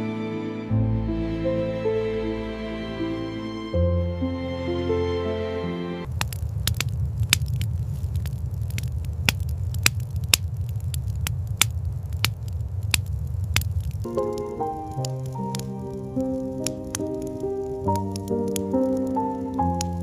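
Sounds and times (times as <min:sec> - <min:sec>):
soft background music: 0:00.0 - 0:06.1, 0:14.1 - 0:20.0
wood fire crackling: 0:06.1 - 0:20.0.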